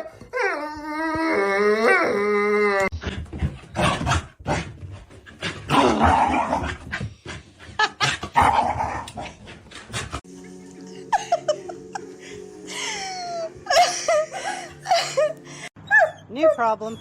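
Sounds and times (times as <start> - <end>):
dog growling and barking: 5.4 - 7.0, 8.0 - 10.2.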